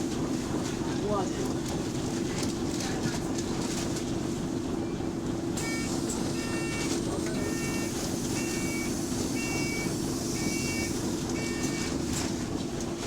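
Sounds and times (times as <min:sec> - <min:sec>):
bus engine running: 0:00.0 - 0:13.0
electronic warning beeps: 0:05.6 - 0:12.0.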